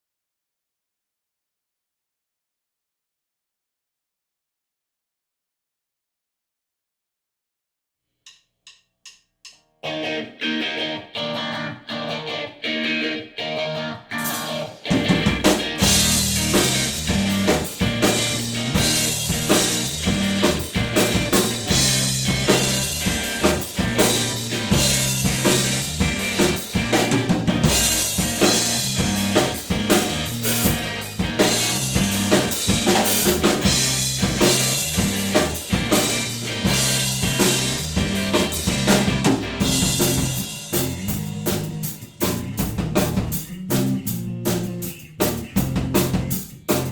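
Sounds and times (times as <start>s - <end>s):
electric bass line: 9.9s - 46.9s
drum beat on kick and snare: 14.9s - 46.9s.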